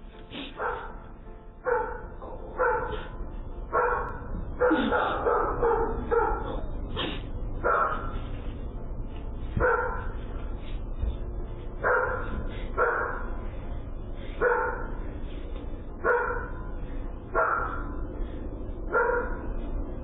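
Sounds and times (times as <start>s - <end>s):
dog barking: 0.4s - 6.8s, 7.6s - 8.2s, 9.6s - 10.2s, 11.8s - 13.4s, 14.4s - 15.0s, 16.0s - 16.7s, 17.3s - 18.1s, 18.9s - 19.6s.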